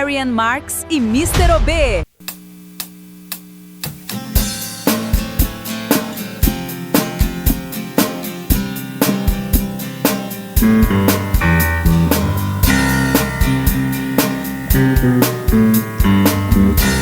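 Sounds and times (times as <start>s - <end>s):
drum kit beat: 3.8s - 17.0s
rock band playing: 4.2s - 17.0s.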